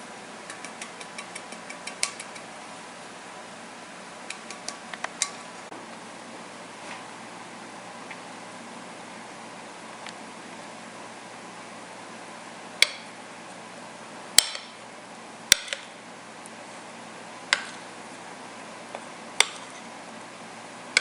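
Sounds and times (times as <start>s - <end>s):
utensils and dishes clinking: 0.5s - 2.5s.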